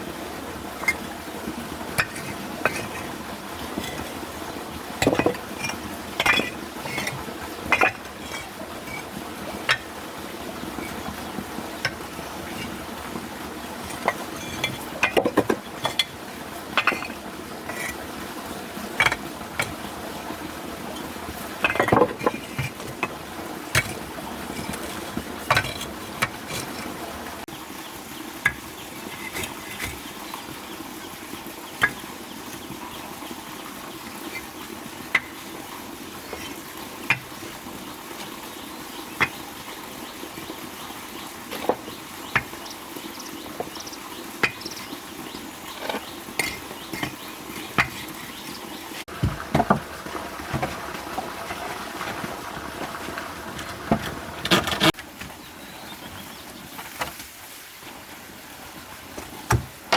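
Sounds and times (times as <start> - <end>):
hard objects clinking and scraping: 3.8 - 4.2, 5.0 - 9.1, 21.6 - 23.2, 23.8 - 27.0.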